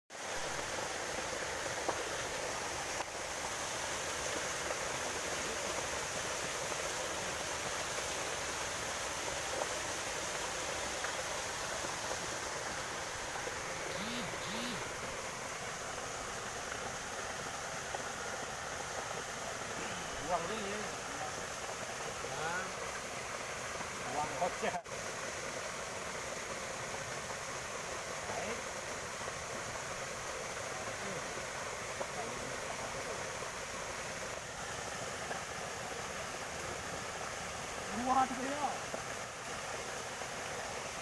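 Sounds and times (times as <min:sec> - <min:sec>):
river water rushing: 0:00.1 - 0:41.0
faint chirps: 0:13.7 - 0:15.0.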